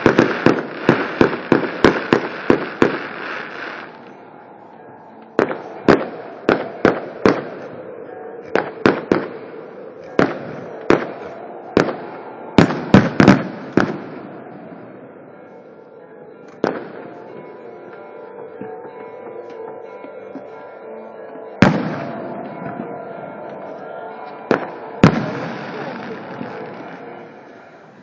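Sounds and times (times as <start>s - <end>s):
fireworks bangs: 0.0s - 4.2s, 5.3s - 7.8s, 8.6s - 9.4s, 10.0s - 14.8s, 16.5s - 17.1s, 21.6s - 23.0s, 24.5s - 28.0s.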